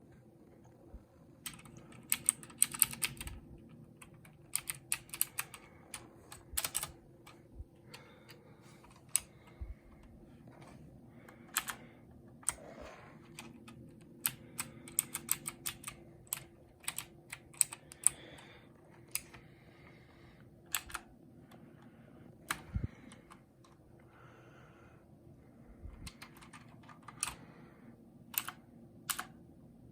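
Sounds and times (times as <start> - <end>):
mechanical keyboard typing: 1.4 - 7.4, 11.4 - 18.2, 19.0 - 19.4, 20.7 - 21.1, 26.0 - 27.4, 28.3 - 29.4.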